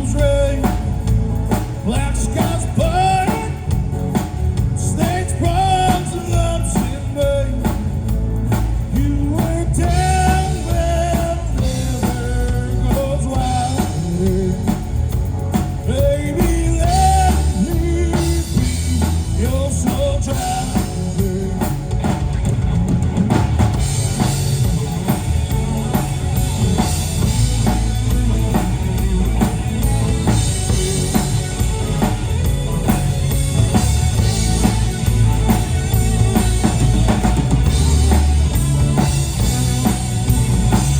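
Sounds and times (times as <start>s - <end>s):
rock band playing: 0.0s - 40.9s
person singing: 4.8s - 7.8s, 8.9s - 14.9s, 15.8s - 22.2s.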